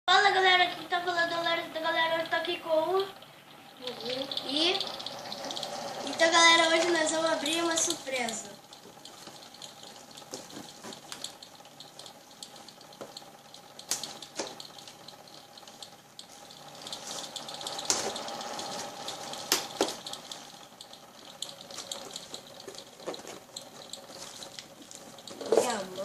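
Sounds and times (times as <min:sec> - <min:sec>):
faint steady hum: 0:00.1 - 0:26.0
sharp clicks and snaps: 0:02.1 - 0:26.0
cardboard rustling and crinkling: 0:21.8 - 0:26.0.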